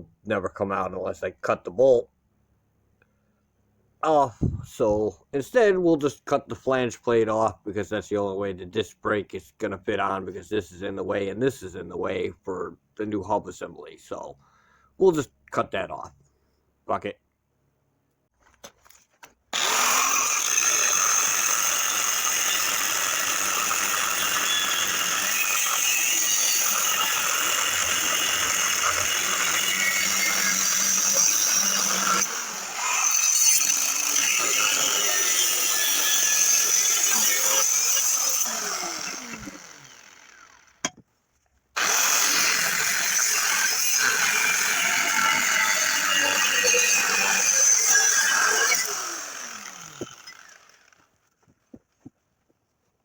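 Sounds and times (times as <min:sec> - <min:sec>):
angle grinder cutting steel: 0:19.6 - 0:40.8, 0:41.8 - 0:51.0.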